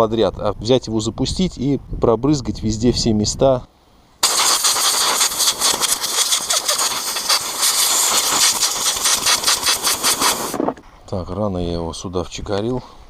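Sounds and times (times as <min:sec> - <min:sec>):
pressurised air jet hissing: 0:04.2 - 0:10.8.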